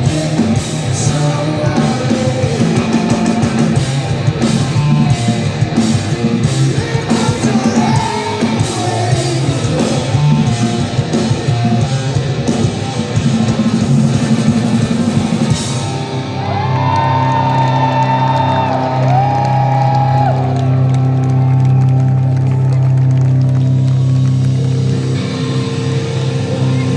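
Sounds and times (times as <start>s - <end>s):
drums and crashing cymbals: 0.0s - 16.7s
distorted guitars: 0.0s - 26.9s
hard rock band playing: 0.0s - 26.9s.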